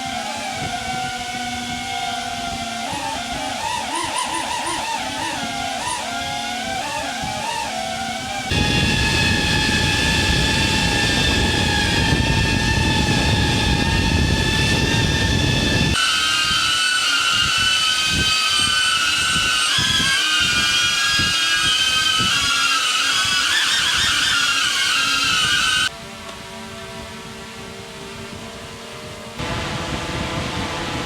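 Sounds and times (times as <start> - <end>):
drone propellers whining: 0.0 - 31.0
wind buffeting microphone: 5.4 - 16.0, 25.2 - 31.0.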